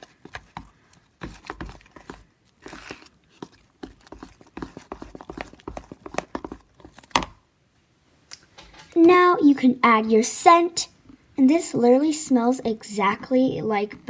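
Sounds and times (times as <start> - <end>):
wet squishes of stirring: 0.0 - 7.2.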